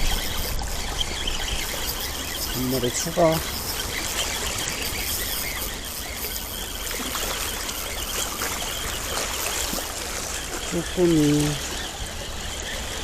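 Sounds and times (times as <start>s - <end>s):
faint ticks: 0.0s - 9.8s
water rushing: 0.0s - 13.0s.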